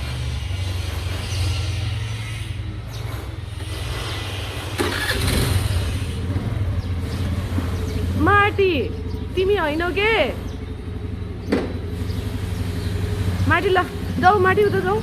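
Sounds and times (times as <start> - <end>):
motorbike engine idling: 0.0 - 15.0.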